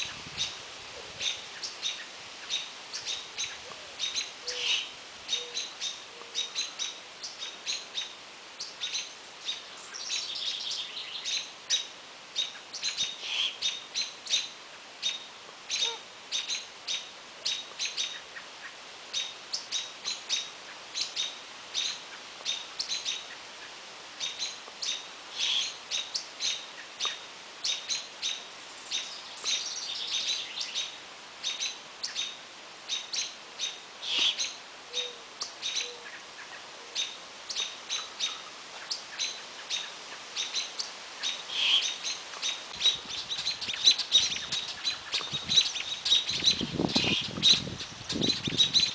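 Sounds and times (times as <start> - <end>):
small birds chirping: 1.2 - 48.9.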